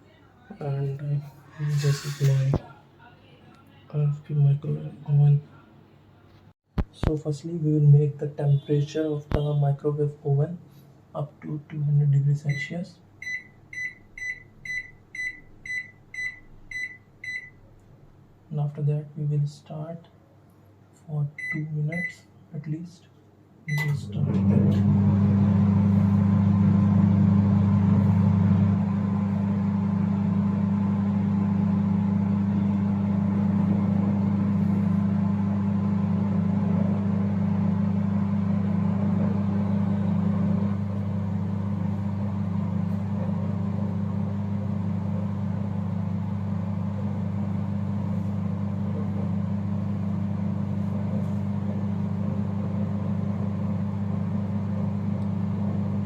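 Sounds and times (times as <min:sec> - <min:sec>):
microwave oven humming: 0:12.4 - 0:17.8, 0:23.6 - 0:56.0.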